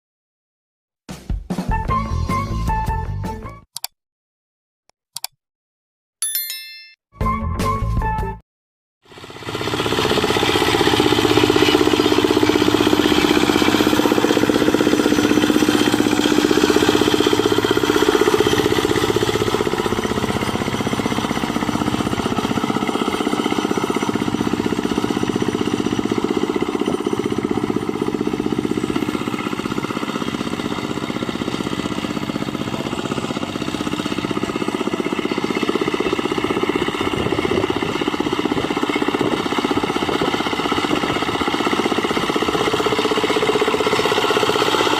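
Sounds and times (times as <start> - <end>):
diesel hand tractor engine running: 9.1 - 44.9.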